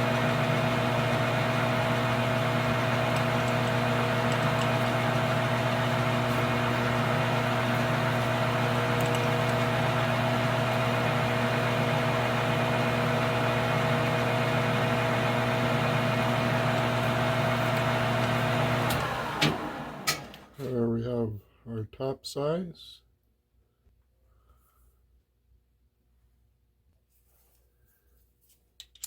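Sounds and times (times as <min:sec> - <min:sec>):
metal lathe motor hum: 0:00.0 - 0:20.5.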